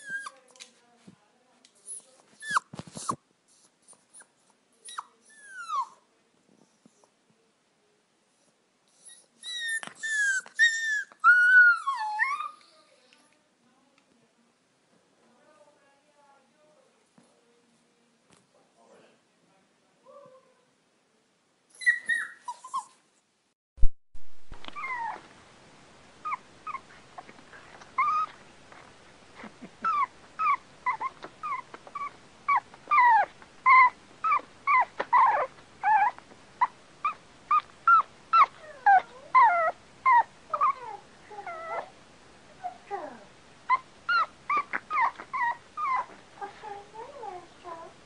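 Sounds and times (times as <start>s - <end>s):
dog whining and whimpering: 0.0s - 0.4s, 1.9s - 3.2s, 3.9s - 6.0s, 8.9s - 12.8s, 21.7s - 23.0s, 24.6s - 25.3s, 28.0s - 28.4s, 29.8s - 42.0s, 42.6s - 47.9s.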